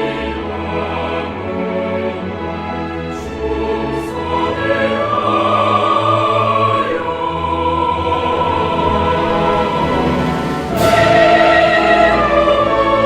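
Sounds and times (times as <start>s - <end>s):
choir singing: 0.0s - 13.0s
orchestral music: 0.0s - 13.0s
high sustained vocal line: 4.2s - 13.0s.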